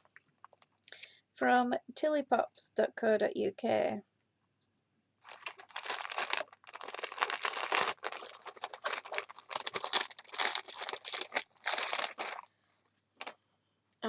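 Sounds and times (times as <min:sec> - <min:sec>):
packaging crinkling and rustling: 0:05.2 - 0:12.5.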